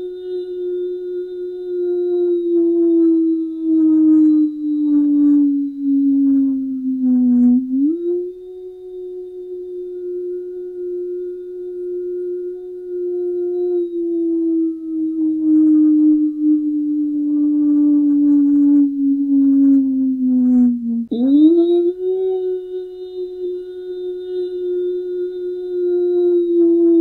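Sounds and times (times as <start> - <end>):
tornado warning siren wailing: 11.8 - 27.0.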